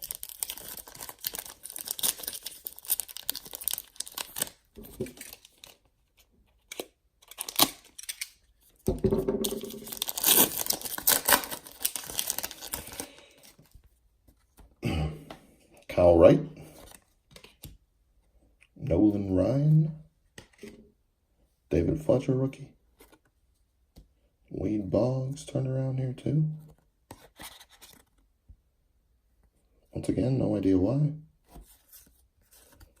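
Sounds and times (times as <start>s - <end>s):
card wrappers tearing and crinkling: 0.0s - 5.9s, 6.6s - 8.4s, 9.5s - 13.6s
cards being handled: 0.0s - 14.7s, 31.5s - 33.0s.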